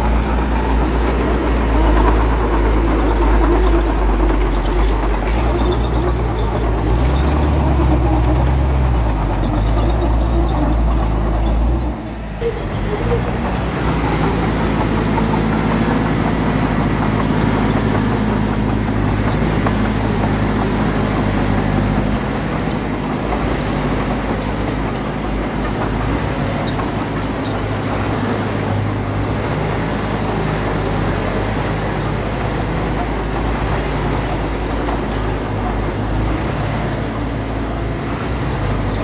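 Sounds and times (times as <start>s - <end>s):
diesel engine running under load: 0.0s - 39.0s.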